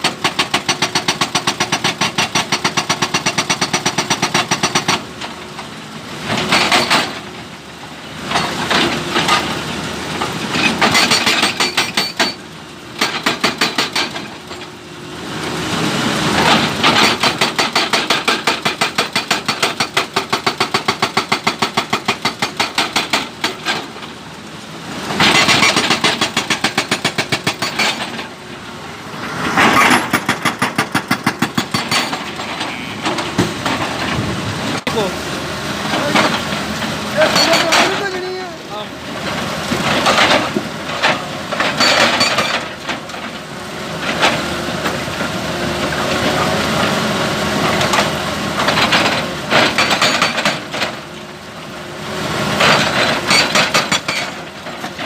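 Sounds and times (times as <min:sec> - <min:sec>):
hydraulic breaker hammering stone: 0:00.0 - 0:05.1, 0:06.4 - 0:07.2, 0:10.6 - 0:12.4, 0:13.0 - 0:14.6, 0:16.5 - 0:23.9, 0:25.2 - 0:28.2, 0:29.6 - 0:33.9, 0:37.2 - 0:38.4, 0:40.0 - 0:42.8, 0:47.8 - 0:51.1, 0:52.6 - 0:55.0
excavator engine running: 0:00.0 - 0:55.0.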